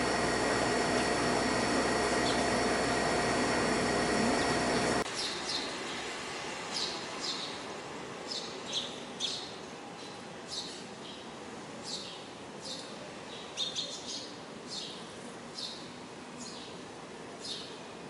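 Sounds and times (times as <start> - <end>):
steady hiss with hum: 0.0 - 8.3.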